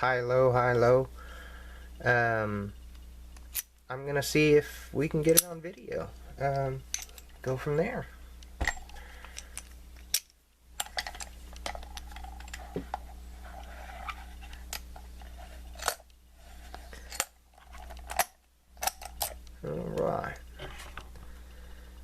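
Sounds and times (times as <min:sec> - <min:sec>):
steady low hum: 0:00.0 - 0:22.0
padlock and tools clicking: 0:17.0 - 0:19.4.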